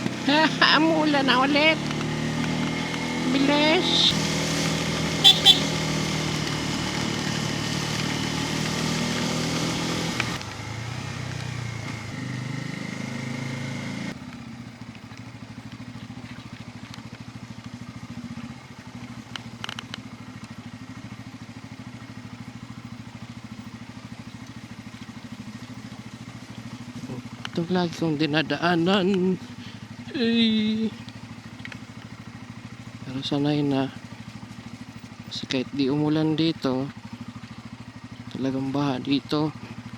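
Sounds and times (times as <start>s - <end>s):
wind and tyre hiss: 0.0s - 14.2s, 15.4s - 27.5s
motorcycle engine accelerating: 0.0s - 39.9s.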